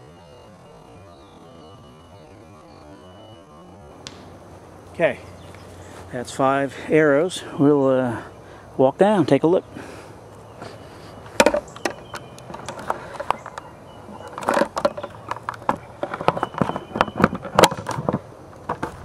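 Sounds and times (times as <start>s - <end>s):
sharp clicks and knocks: 3.9s - 4.4s, 11.4s - 19.0s
footsteps walking: 3.9s - 6.4s.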